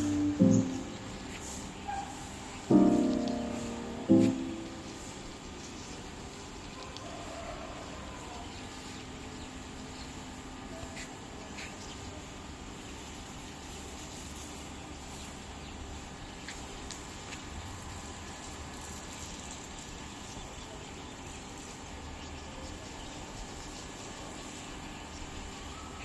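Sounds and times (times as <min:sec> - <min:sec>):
outdoor background hiss: 0:00.0 - 0:26.0.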